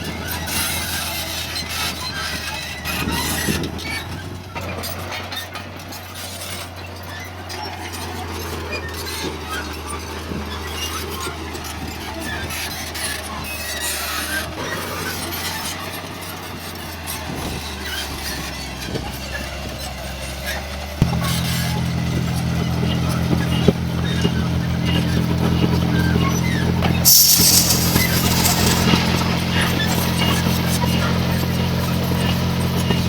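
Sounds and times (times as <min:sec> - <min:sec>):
diesel engine running: 0:19.1 - 0:33.0
metallic clanks and squeals: 0:20.4 - 0:33.0.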